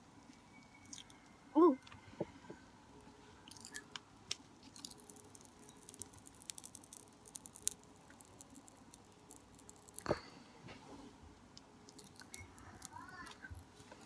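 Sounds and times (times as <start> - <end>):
popping candy crackling: 0.8 - 1.2, 3.5 - 10.4, 11.8 - 14.0.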